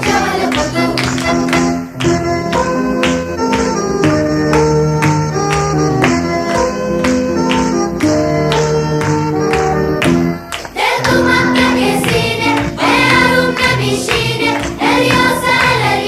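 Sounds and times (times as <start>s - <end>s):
sung chorus over a beat: 0.0s - 1.0s, 10.7s - 16.0s
picked instrumental melody: 0.0s - 16.0s.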